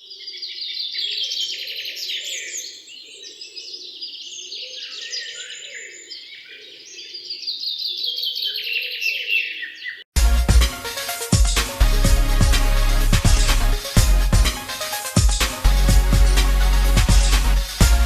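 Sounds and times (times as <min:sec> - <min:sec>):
songbirds singing and chirping: 0:00.0 - 0:10.1
loud electronic music: 0:10.2 - 0:18.0.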